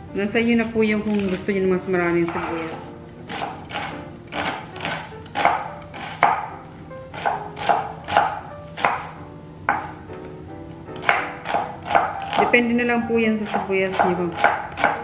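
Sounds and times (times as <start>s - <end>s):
knife chopping on cutting board: 2.2s - 6.5s, 7.1s - 9.1s, 9.7s - 10.0s, 11.0s - 12.5s, 13.4s - 15.0s.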